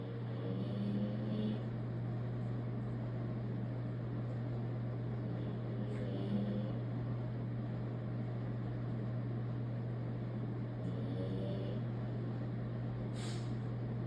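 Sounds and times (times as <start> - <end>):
dog snoring: 0.0 - 1.7, 5.2 - 6.9, 10.8 - 12.0
steady low hum: 0.0 - 14.0.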